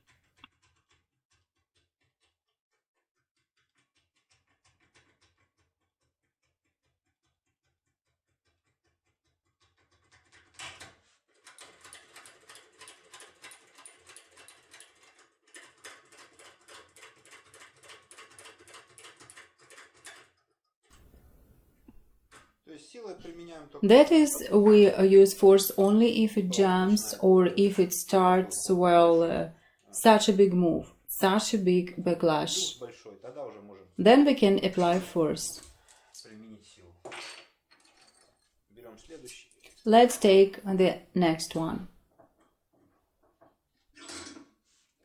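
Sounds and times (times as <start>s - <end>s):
lock tool clicking and scratching: 0.2s - 1.4s, 3.6s - 5.7s, 8.8s - 20.4s, 37.1s - 38.5s.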